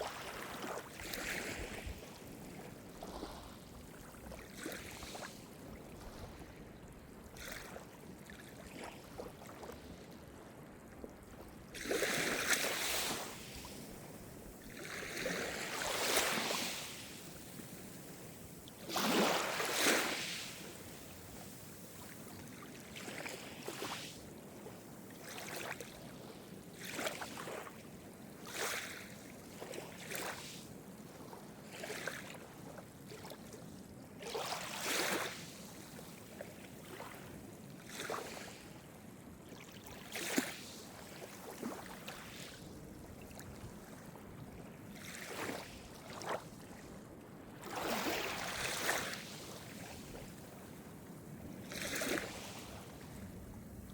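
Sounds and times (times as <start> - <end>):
steady hiss of surf: 12.2 - 22.6, 23.3 - 24.3
waves splashing on shore: 14.8 - 17.7, 18.8 - 22.1, 51.8 - 53.2.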